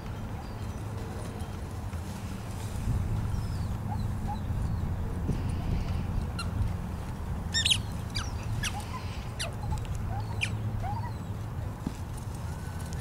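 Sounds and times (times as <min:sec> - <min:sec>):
steady low rumble: 0:02.2 - 0:11.0.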